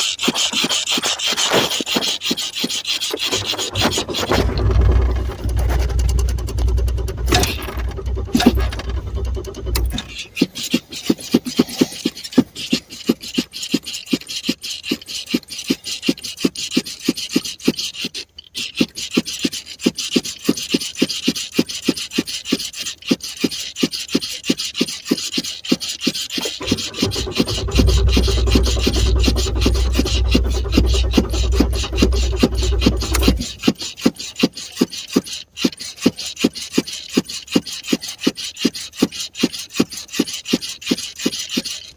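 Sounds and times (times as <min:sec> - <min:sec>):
car starter cranking engine: 0:03.2 - 0:10.3, 0:26.4 - 0:33.8
steady low drone: 0:03.4 - 0:10.1, 0:26.6 - 0:33.6.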